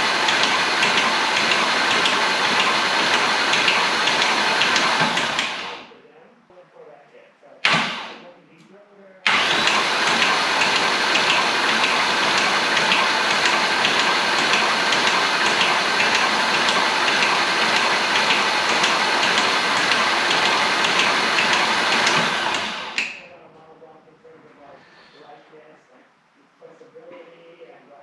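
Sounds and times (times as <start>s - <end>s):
starter motor cranking engine: 0.0s - 5.9s, 7.6s - 8.2s, 9.2s - 23.3s.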